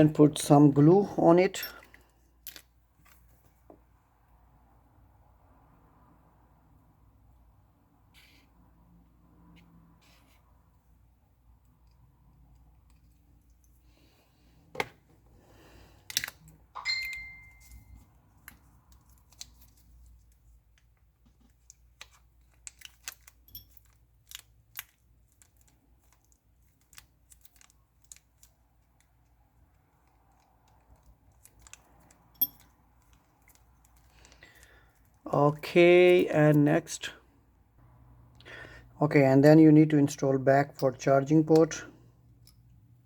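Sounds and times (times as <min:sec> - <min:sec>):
clicks of tools and phone parts: 0:01.5 - 0:03.8, 0:16.0 - 0:29.1.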